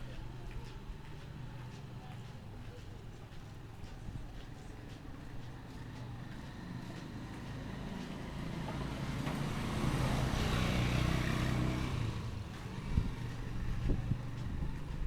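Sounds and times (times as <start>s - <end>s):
motor vehicle passing by: 5.4s - 15.0s.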